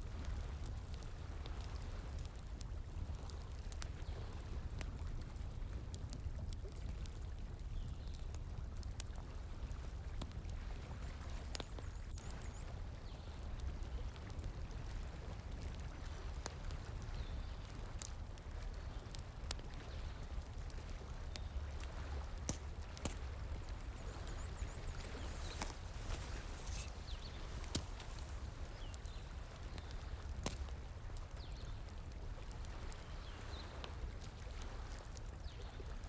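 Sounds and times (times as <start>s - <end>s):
wood fire crackling: 12.9s - 36.0s.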